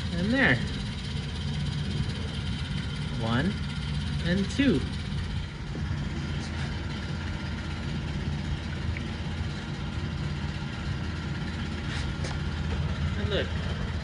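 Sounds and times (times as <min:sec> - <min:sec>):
engine idling: 0:00.0 - 0:14.0.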